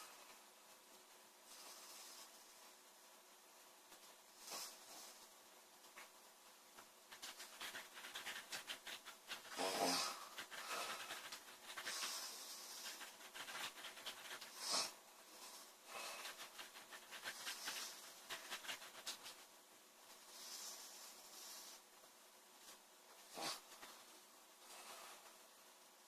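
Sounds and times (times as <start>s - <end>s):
girl snoring: 9.6s - 10.2s.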